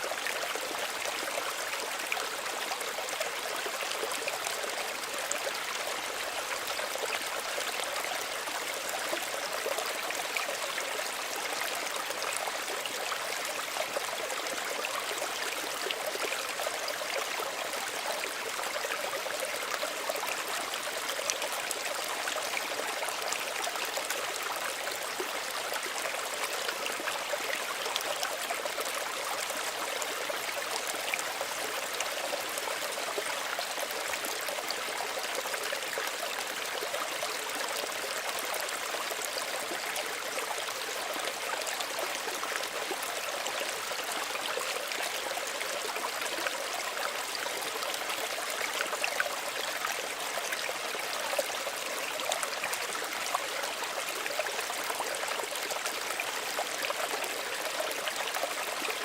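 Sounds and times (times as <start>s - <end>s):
stream babbling over stones: 0.0s - 59.0s.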